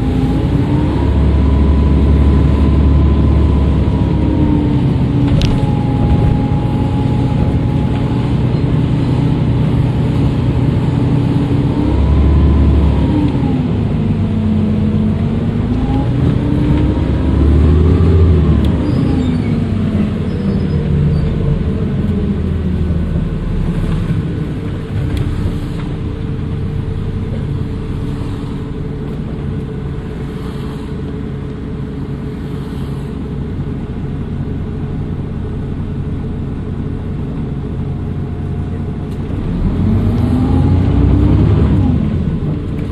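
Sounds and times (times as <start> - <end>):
bus diesel engine running: 0.0 - 42.9
turbocharger whistle: 18.6 - 21.4.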